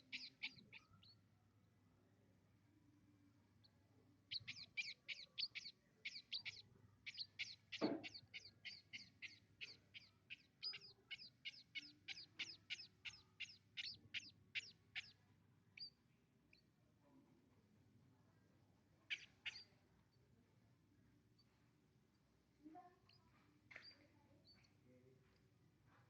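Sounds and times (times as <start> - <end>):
sparrow chirping: 0.0 - 1.2, 3.6 - 15.2, 15.8 - 16.7, 19.1 - 19.8, 23.1 - 25.4.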